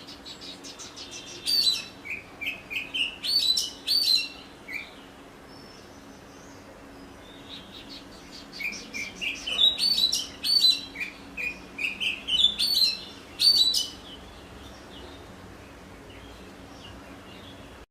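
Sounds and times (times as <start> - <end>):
bird singing whistles and chatter: 0.0 - 5.0, 7.3 - 14.2.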